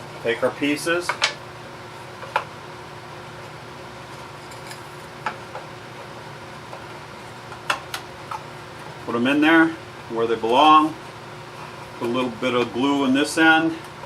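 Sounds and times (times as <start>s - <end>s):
room hum: 0.0s - 14.0s.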